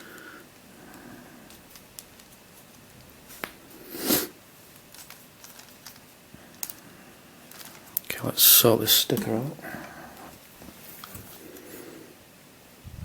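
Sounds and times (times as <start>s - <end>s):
person sniffing: 3.8s - 4.4s.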